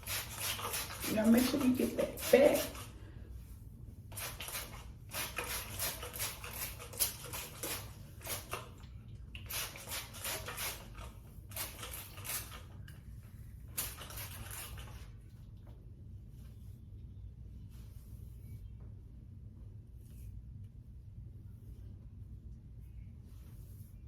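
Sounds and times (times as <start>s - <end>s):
brush strokes through hair: 16.2s - 18.9s, 19.9s - 24.0s.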